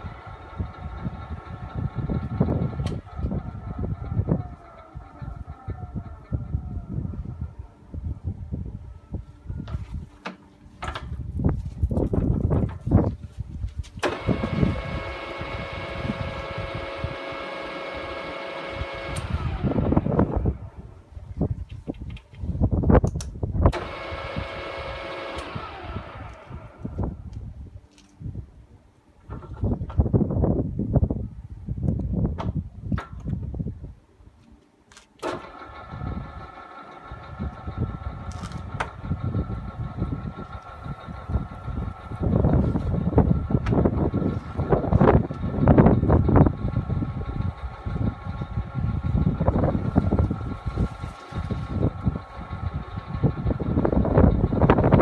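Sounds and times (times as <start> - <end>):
drill press motor whining: 0.0 - 7.6, 14.0 - 20.9, 23.7 - 27.4, 35.2 - 55.0.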